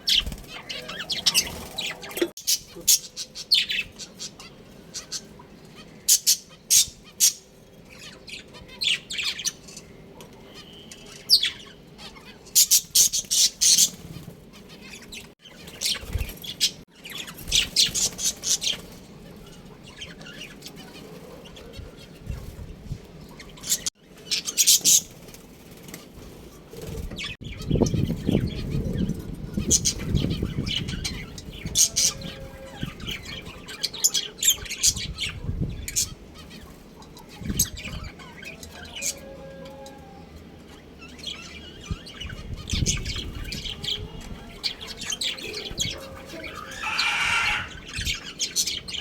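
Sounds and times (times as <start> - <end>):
budgerigars chirping: 44.7 - 49.0.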